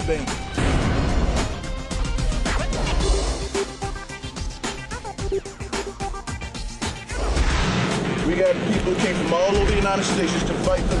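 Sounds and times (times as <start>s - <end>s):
dramatic trailer music: 0.0s - 11.0s.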